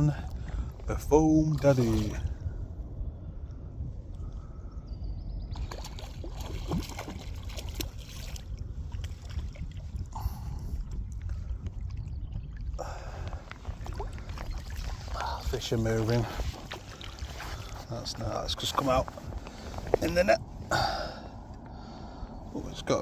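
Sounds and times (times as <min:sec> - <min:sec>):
wind rumbling on microphone: 0:00.0 - 0:23.0
small water splashes: 0:01.5 - 0:02.4, 0:05.5 - 0:21.2.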